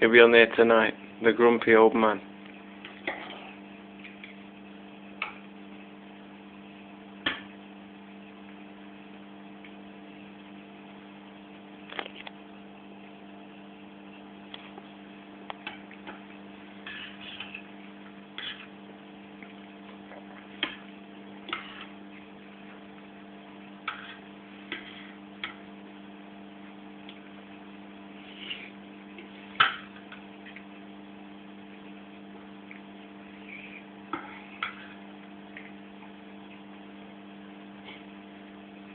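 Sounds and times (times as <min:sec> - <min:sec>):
electrical hum: 0:00.0 - 0:38.9.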